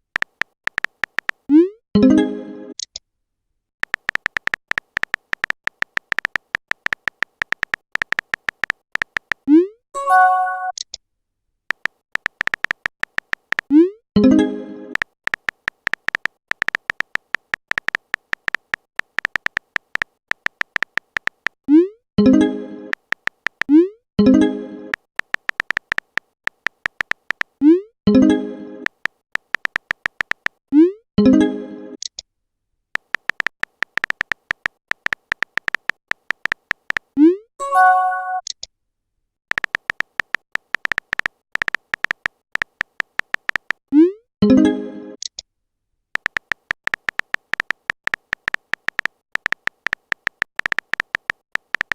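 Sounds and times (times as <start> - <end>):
smartphone keyboard typing clicks: 0.1 - 1.5, 3.8 - 9.5, 11.7 - 13.8, 14.9 - 21.6, 22.9 - 23.8, 24.9 - 27.6, 28.8 - 30.6, 33.0 - 37.2, 39.5 - 43.8, 46.2 - 51.9
short message tone: 10.0 - 10.8, 37.6 - 38.4.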